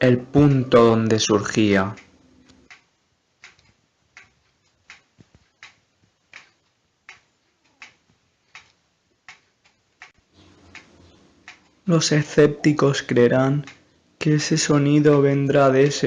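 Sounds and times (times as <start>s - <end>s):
waving cat toy ticking: 1.9s - 11.9s.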